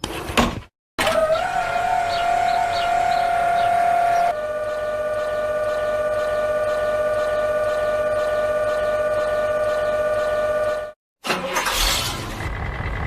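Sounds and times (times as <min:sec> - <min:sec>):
car engine starting and running: 0:01.0 - 0:13.0
steady pitched drone: 0:01.3 - 0:10.8.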